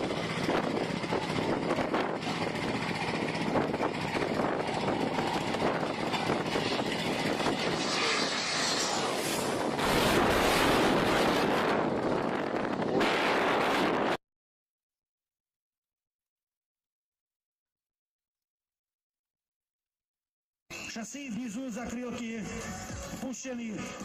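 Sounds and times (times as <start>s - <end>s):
airplane engine landing low: 0.0s - 14.2s.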